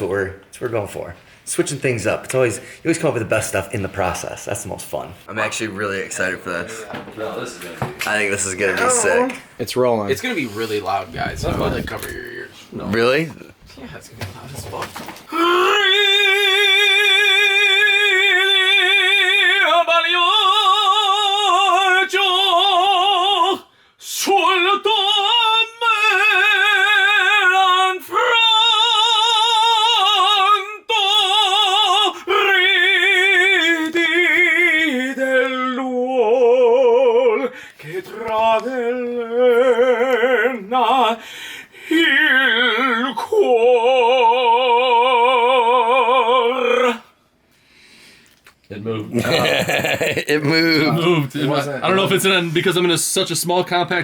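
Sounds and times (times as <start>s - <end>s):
man singing opera: 15.3s - 47.2s.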